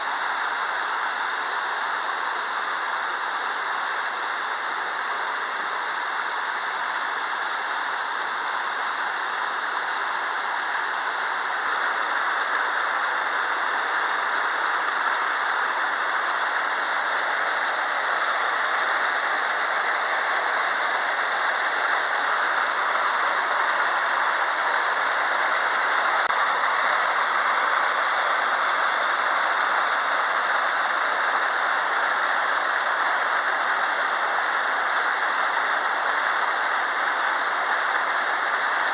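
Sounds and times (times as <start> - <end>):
water pouring over waterfall: 16.1 - 38.9.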